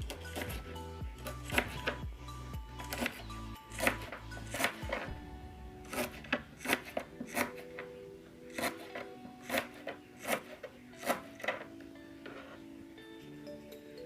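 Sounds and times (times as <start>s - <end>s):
soft background music: 0.0s - 14.0s
knife slicing stalks: 2.9s - 5.1s, 5.9s - 7.7s, 8.5s - 11.7s.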